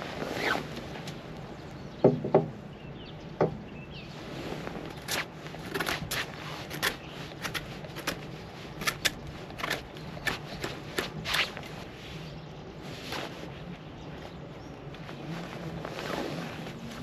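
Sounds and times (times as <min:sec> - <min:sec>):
wood scraping: 0:03.4 - 0:12.3
sticks cracking and snapping: 0:04.9 - 0:11.6.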